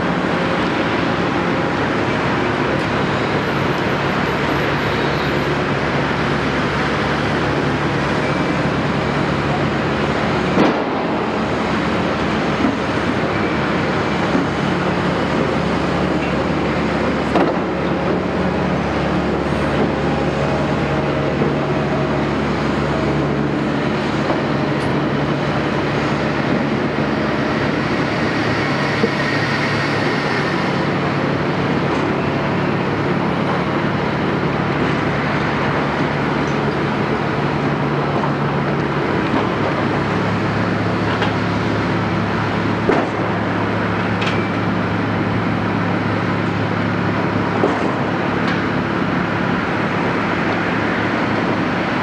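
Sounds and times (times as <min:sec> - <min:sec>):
excavator diesel engine running: 0:00.0 - 0:52.0.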